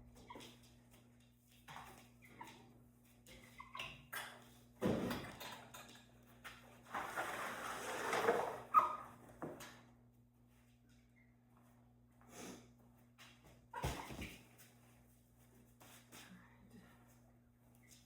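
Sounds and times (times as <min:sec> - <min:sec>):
scraping and rustling: 0:06.8 - 0:08.7.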